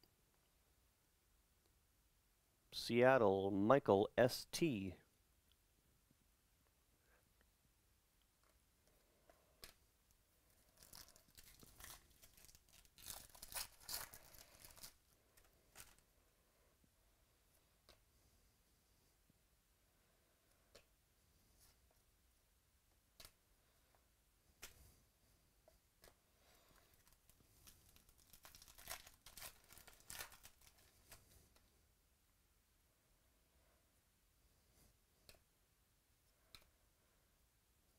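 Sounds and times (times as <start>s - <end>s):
wrapper tearing and crinkling: 10.7s - 15.0s, 26.9s - 30.9s.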